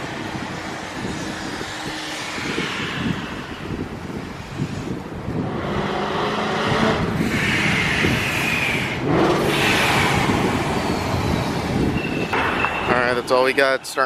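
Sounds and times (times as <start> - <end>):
supercharged engine whining: 0.4 - 13.2
blow-off valve whoosh: 6.8 - 11.9.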